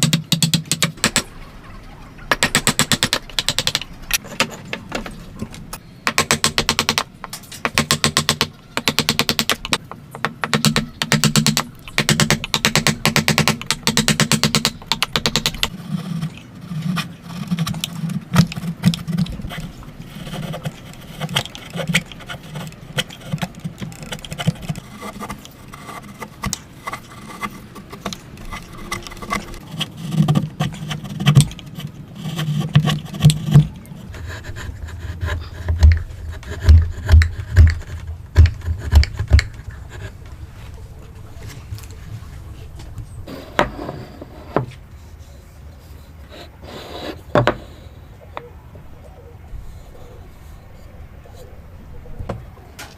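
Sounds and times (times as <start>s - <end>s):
scraping and cutting strokes: 15.4s - 40.3s.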